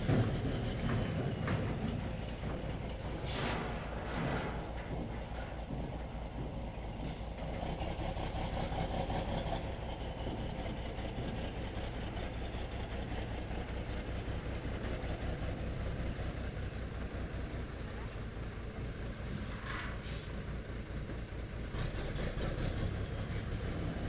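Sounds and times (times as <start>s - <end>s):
diesel truck engine idling: 0.0s - 24.0s.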